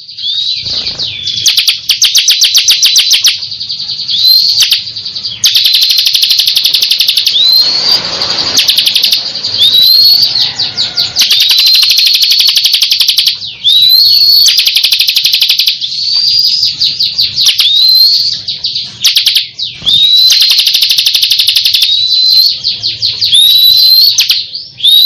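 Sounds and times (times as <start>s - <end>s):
bird trilling: 0.0s - 25.0s
rising whistled sweeps: 7.3s - 12.0s.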